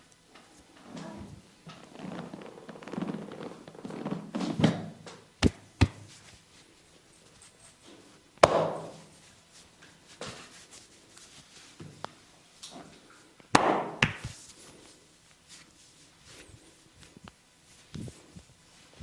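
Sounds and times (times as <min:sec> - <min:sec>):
hands slapping bare skin: 0:05.4 - 0:06.1, 0:13.5 - 0:14.4.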